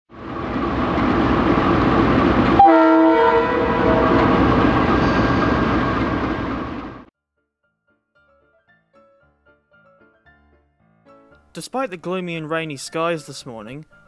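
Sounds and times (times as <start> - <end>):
train passing with rumble: 0.1 - 7.1
locomotive horn blast: 2.6 - 6.2.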